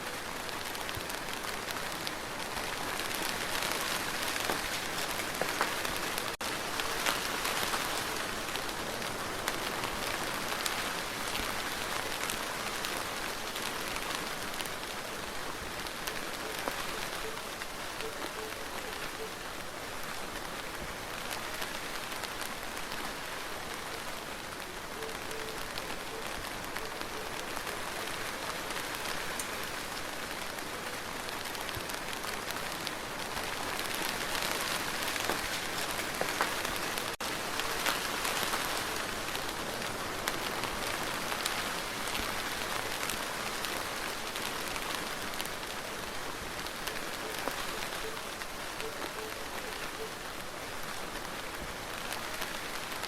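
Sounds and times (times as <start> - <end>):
rain falling: 0.0 - 53.0.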